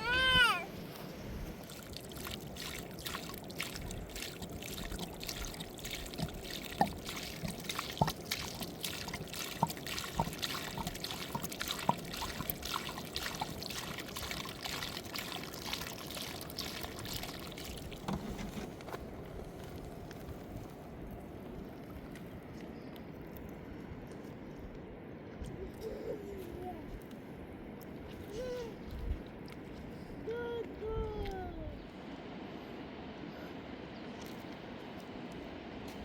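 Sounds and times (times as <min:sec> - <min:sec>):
flowing water rushing: 0:00.0 - 0:20.7
water trickling and splashing: 0:00.0 - 0:31.9.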